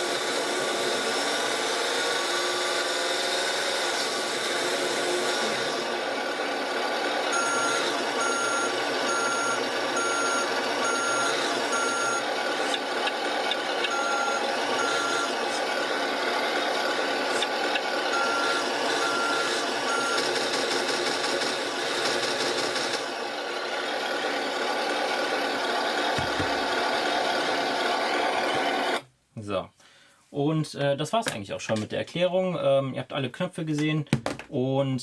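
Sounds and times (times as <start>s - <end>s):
simulated truck engine running: 0.0s - 29.0s
reverse warning beeps: 7.3s - 12.3s, 13.9s - 15.4s, 18.1s - 20.4s.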